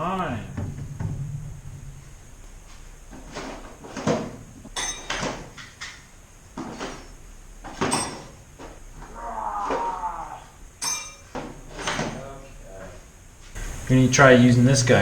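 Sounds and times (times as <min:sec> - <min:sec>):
metal parts knocking and clinking: 0:00.5 - 0:08.9, 0:10.8 - 0:12.2.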